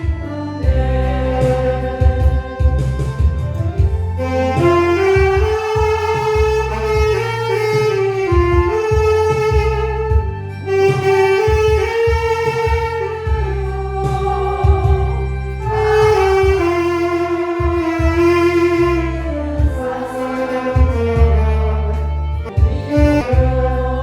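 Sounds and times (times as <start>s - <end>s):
backing track with bass and beat: 0.0s - 24.0s
saxophone melody: 0.0s - 24.0s.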